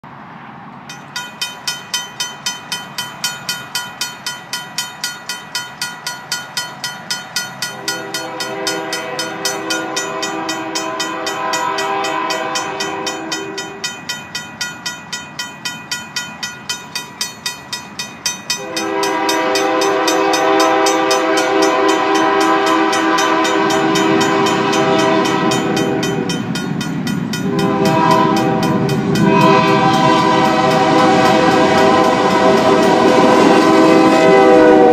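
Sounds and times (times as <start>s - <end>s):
low rumble of train: 0.0s - 34.9s
railroad crossing bell ringing: 0.8s - 34.9s
locomotive air horn blasts: 7.7s - 13.8s, 18.6s - 26.3s, 27.4s - 34.9s.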